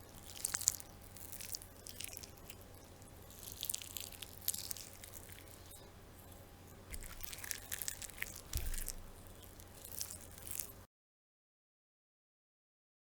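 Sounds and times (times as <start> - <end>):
wet squelching flesh: 0.0 - 5.8, 6.9 - 10.8.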